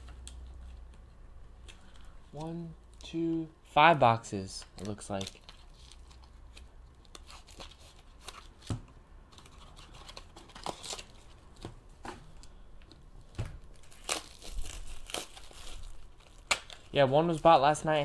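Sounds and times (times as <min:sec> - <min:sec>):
wrapping rustling and tearing: 0:04.6 - 0:08.6, 0:09.4 - 0:11.6, 0:13.7 - 0:18.0.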